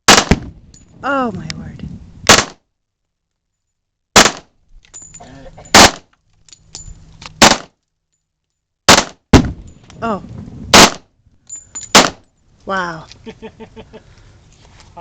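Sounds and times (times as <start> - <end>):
submachine gun firing: 0.1 - 0.5, 2.3 - 2.6, 4.2 - 4.5, 5.7 - 6.0, 7.4 - 7.7, 8.9 - 9.6, 10.7 - 11.0, 11.9 - 12.2.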